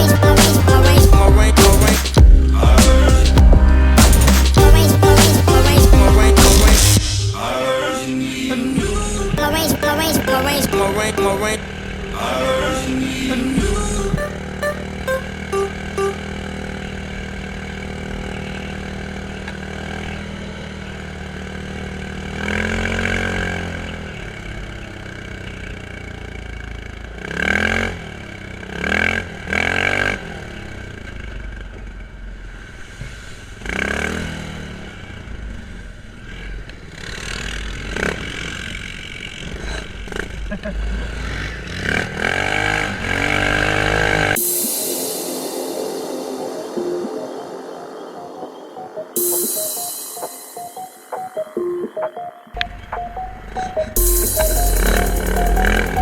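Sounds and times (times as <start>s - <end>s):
quad bike engine idling and revving: 0.0s - 7.0s, 8.8s - 44.4s.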